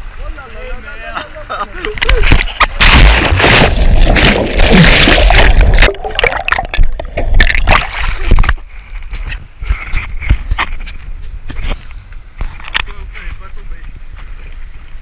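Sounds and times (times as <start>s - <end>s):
water splashing around canoe: 2.1s - 11.8s.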